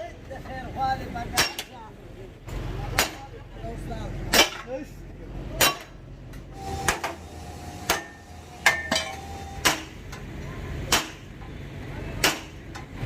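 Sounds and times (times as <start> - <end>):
metallic ring: 7.9 - 9.4.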